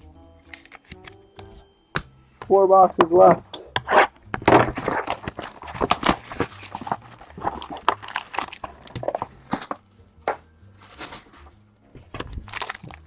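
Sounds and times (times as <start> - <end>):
card packaging taps and rustles: 2.9 - 11.3, 12.0 - 13.0.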